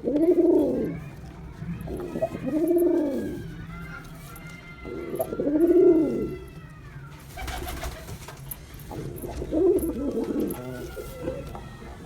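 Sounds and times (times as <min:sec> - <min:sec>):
pigeon cooing: 0:00.0 - 0:01.0, 0:04.8 - 0:06.4, 0:08.9 - 0:12.0.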